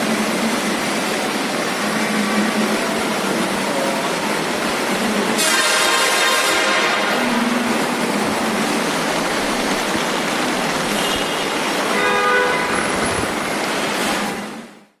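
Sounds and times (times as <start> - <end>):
loud steady rush of noise: 0.0 - 15.0
vehicle horns tooting: 5.4 - 7.4, 10.8 - 13.3.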